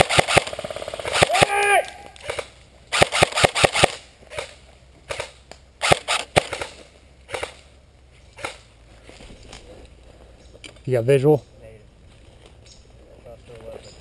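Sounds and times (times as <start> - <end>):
airsoft gun shots: 0.0 - 7.6.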